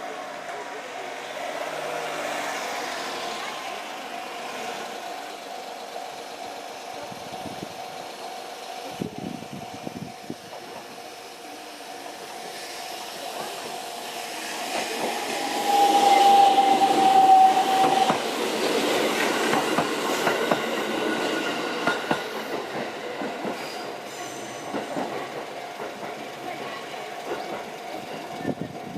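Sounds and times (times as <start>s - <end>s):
electric train passing: 0.0s - 28.9s
long high tone: 14.6s - 18.4s
crossing alarm tone: 15.3s - 18.2s.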